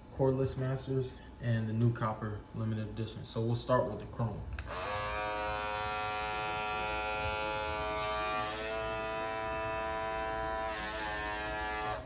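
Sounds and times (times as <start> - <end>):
hair clipper buzzing: 4.7 - 12.0.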